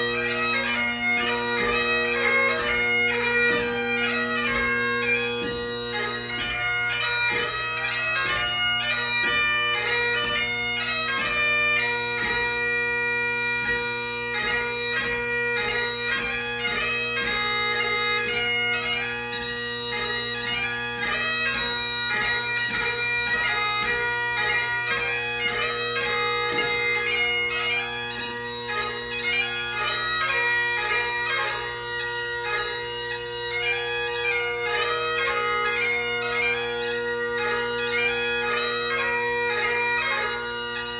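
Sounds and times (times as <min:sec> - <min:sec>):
bagpipe playing a march: 0:00.0 - 0:40.9.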